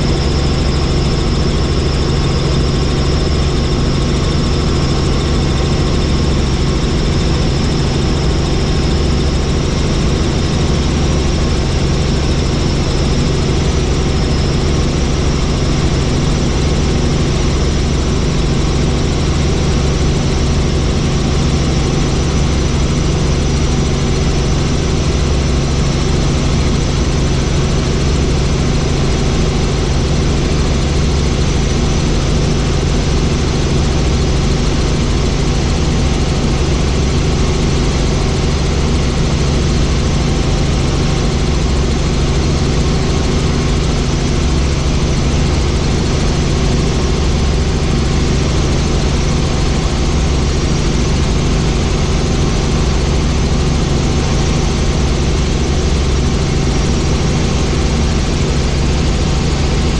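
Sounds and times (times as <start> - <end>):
helicopter drone: 0.0 - 59.9.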